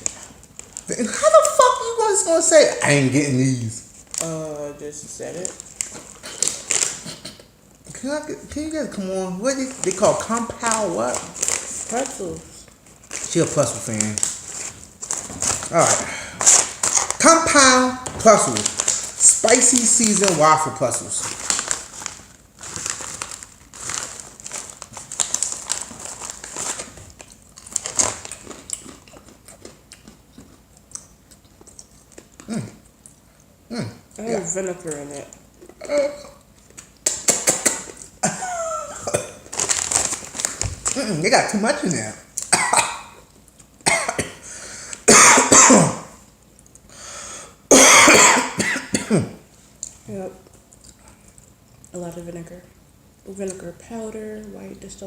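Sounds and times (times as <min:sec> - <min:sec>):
plastic snack bag crinkling: 0:00.0 - 0:07.1, 0:07.9 - 0:32.4, 0:36.6 - 0:42.5
person coughing hard: 0:38.2 - 0:39.4, 0:42.5 - 0:43.2, 0:43.8 - 0:44.4, 0:45.0 - 0:46.2, 0:47.7 - 0:49.4.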